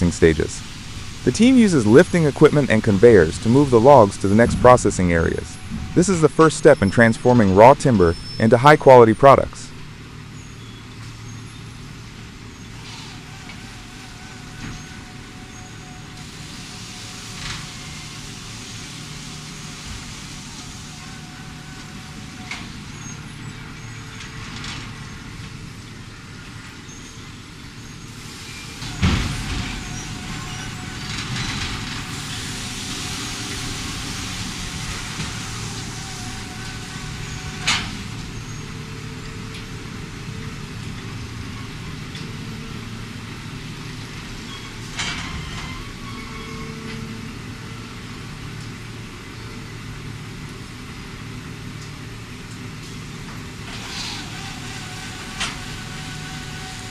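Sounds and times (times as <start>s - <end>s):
heavy machinery running: 0.0s - 56.9s
hiss: 16.2s - 21.3s, 28.1s - 38.2s, 53.6s - 56.9s.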